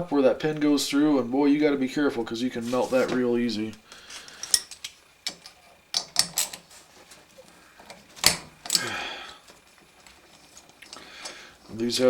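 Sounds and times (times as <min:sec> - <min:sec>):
metal parts and tools clicking: 0:03.9 - 0:11.6
scraping rattle: 0:03.9 - 0:11.8.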